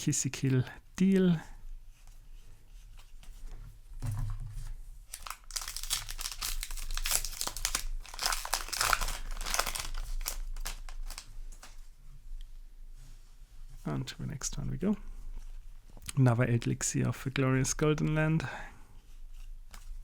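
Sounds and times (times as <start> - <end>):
foil wrapper crinkling: 5.1 - 11.8
foil wrapper tearing: 5.1 - 11.8.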